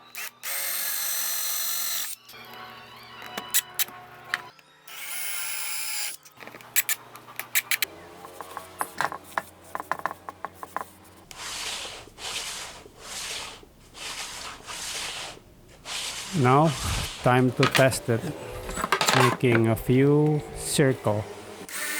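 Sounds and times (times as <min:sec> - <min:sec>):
power drill running: 0:00.0 - 0:03.4, 0:20.5 - 0:21.9
rubbing strokes on wood: 0:10.6 - 0:18.9.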